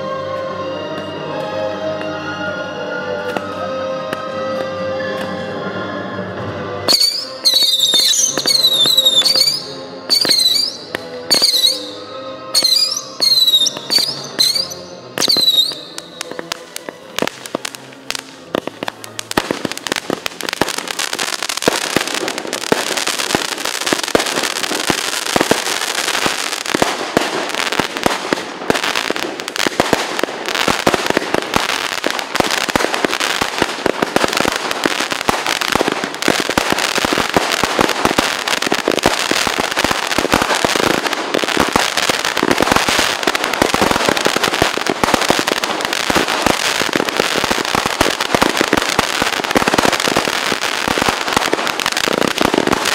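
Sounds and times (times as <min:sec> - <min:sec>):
fireworks crackling and popping: 0:06.8 - 0:52.9
firework whistles: 0:06.9 - 0:16.4.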